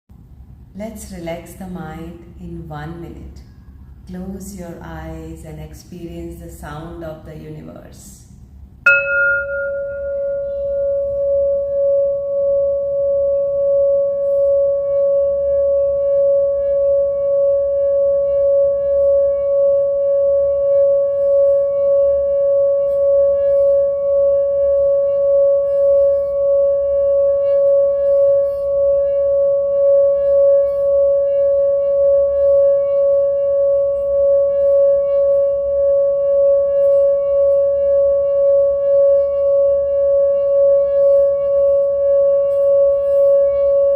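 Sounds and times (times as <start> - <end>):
singing bowl tone: 8.8 - 43.9.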